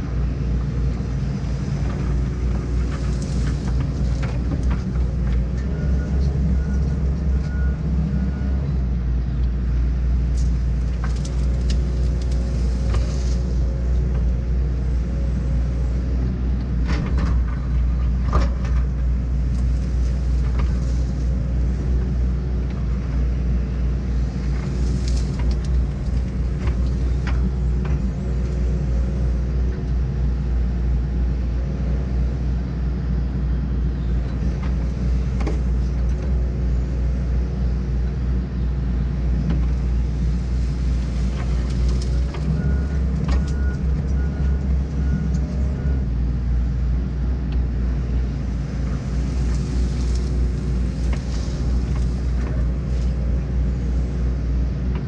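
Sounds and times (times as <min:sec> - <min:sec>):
excavator diesel engine running: 0:00.0 - 0:55.0.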